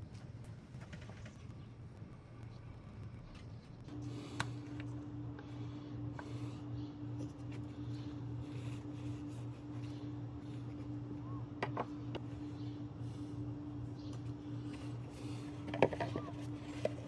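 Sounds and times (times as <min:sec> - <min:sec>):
oil extractor pump humming: 0:03.9 - 0:17.0.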